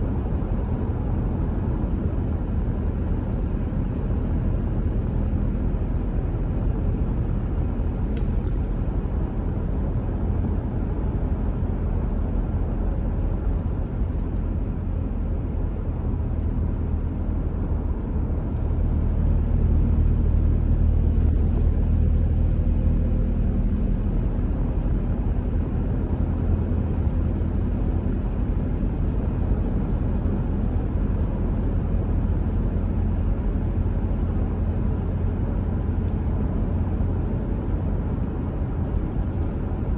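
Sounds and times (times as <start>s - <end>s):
car engine and tyres rumbling: 0.0s - 39.9s.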